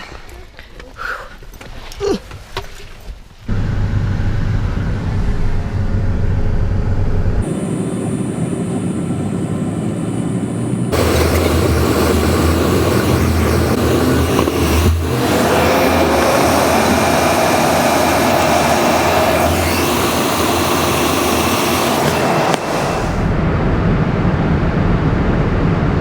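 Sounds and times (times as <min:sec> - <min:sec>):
jet engine and cabin rumble: 0:03.5 - 0:26.0
thin high whine: 0:07.4 - 0:23.4.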